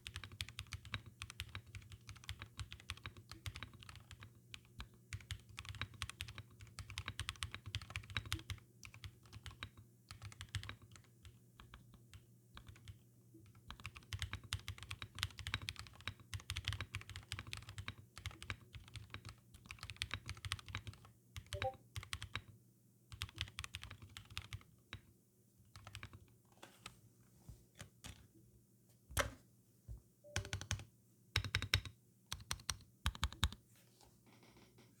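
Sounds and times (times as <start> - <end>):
mechanical keyboard typing: 0.0 - 22.5, 23.1 - 25.0, 25.7 - 26.3, 27.8 - 28.3, 30.3 - 33.6.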